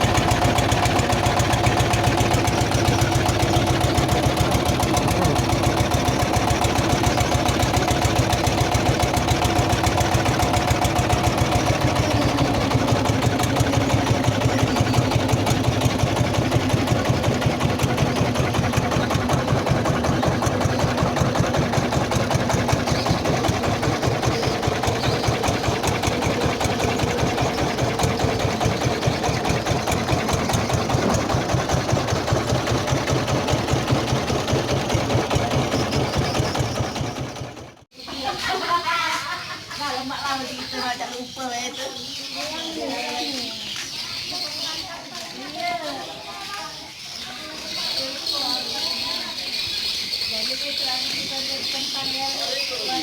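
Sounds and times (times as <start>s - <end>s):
engine running: 0.0s - 38.1s.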